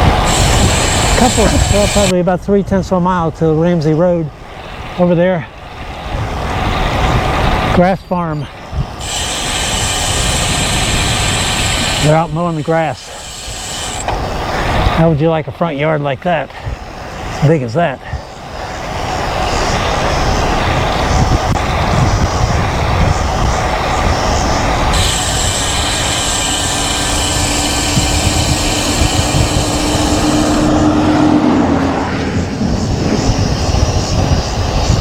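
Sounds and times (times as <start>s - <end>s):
bright hiss: 0.0s - 2.1s, 9.0s - 14.5s, 24.2s - 30.8s
steady low hum: 0.0s - 2.2s, 5.8s - 15.0s, 18.0s - 35.0s
wind buffeting microphone: 0.0s - 3.8s, 4.5s - 15.5s, 18.0s - 35.0s.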